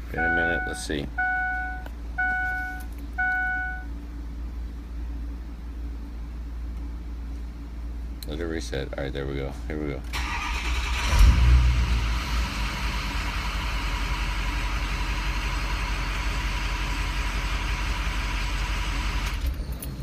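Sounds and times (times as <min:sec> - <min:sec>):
diesel engine cranking and idling: 0:07.9 - 0:20.0.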